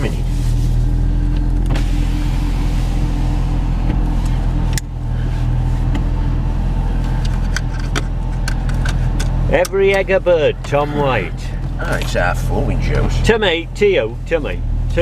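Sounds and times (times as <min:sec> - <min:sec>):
car engine idling: 0:00.0 - 0:15.0
power window motor: 0:01.3 - 0:04.8.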